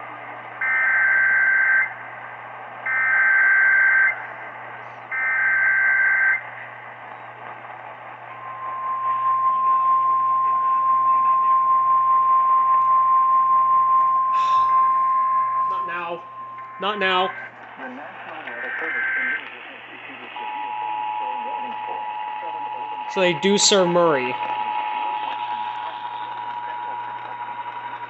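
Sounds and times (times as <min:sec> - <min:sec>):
radio static: 0:06.4 - 0:13.2, 0:13.9 - 0:28.0
data bursts: 0:08.3 - 0:17.6, 0:18.5 - 0:28.0
single-pitch alarm tone: 0:08.3 - 0:17.6, 0:20.4 - 0:27.7.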